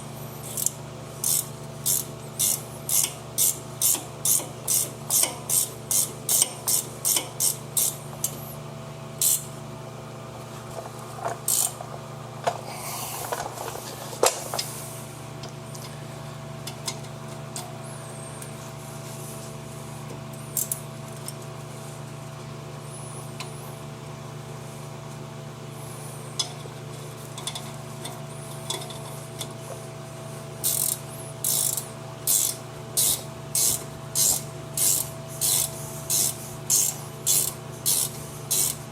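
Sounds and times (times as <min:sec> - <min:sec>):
steady low hum: 0:00.0 - 0:38.9
ratchet wrench clicking: 0:00.4 - 0:08.4, 0:09.2 - 0:09.5, 0:11.5 - 0:11.8, 0:30.6 - 0:38.8.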